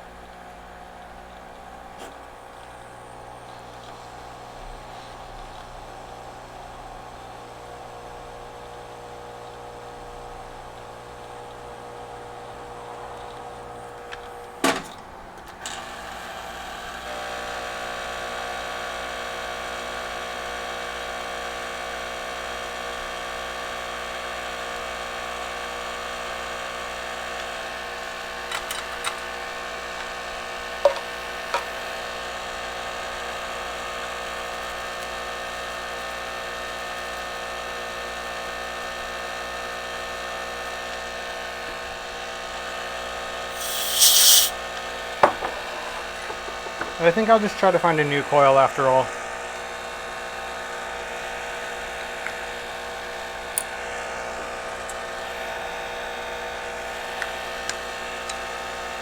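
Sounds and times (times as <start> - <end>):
electric fan motor whirring: 43.6 - 44.5
sharp click: 43.6 - 44.5.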